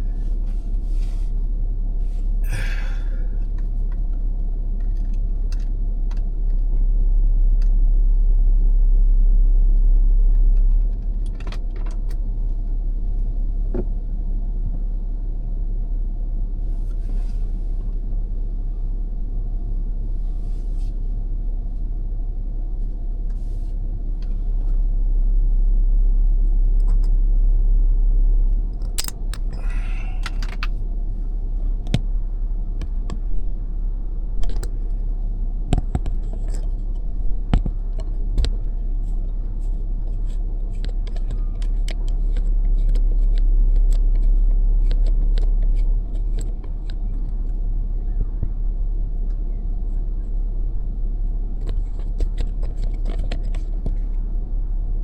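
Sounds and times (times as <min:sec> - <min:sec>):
car road noise rumble: 0:00.0 - 0:55.0
small clicks and rattles: 0:04.8 - 0:06.6, 0:35.7 - 0:47.6, 0:51.6 - 0:54.1.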